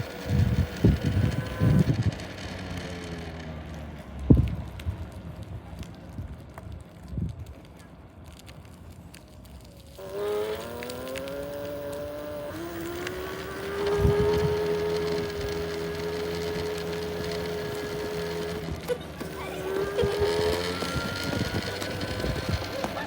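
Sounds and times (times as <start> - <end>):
electric scooter hub motor whining: 0.0 - 6.0, 9.4 - 23.0.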